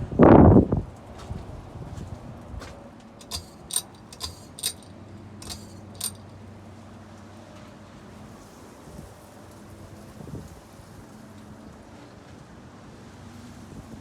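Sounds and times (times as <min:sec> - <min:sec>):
ceiling fan motor hum: 0:01.3 - 0:06.4
light metallic clinks: 0:03.2 - 0:06.4.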